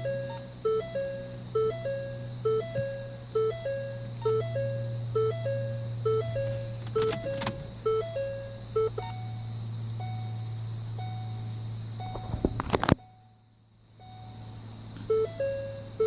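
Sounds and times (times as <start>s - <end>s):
electronic beeping tones: 0.0s - 10.4s, 15.1s - 16.0s
steady low hum: 0.0s - 16.0s.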